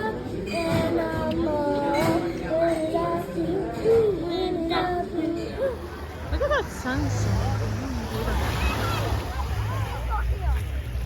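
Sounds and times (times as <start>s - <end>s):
high voice singing: 0.0s - 6.0s.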